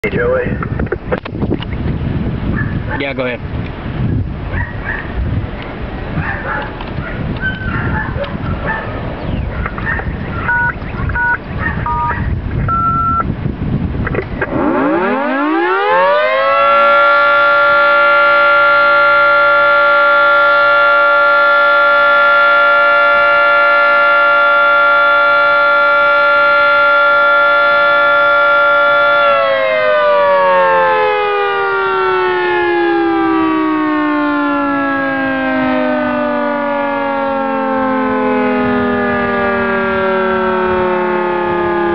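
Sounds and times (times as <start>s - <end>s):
warning siren howl: 5.8s - 13.4s, 14.4s - 41.9s
short electronic beeps: 10.5s - 13.3s.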